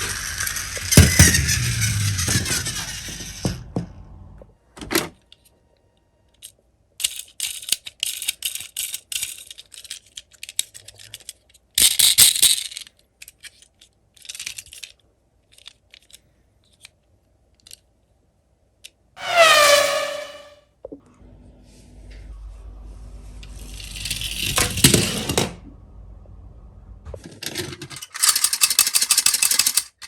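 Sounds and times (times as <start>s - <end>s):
metal toy cars clattering: 0.0s - 4.0s, 7.0s - 16.2s, 23.6s - 25.6s, 27.2s - 30.0s.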